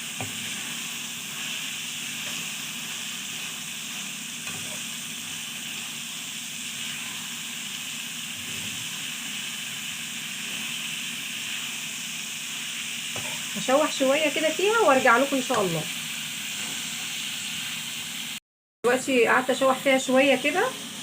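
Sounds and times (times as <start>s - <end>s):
food sizzling in a pan: 0.0s - 21.0s.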